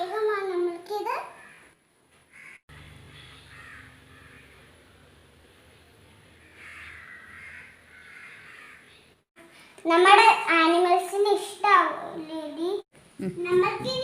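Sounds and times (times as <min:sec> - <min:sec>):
crows cawing faintly: 0:01.3 - 0:05.1, 0:06.4 - 0:09.1.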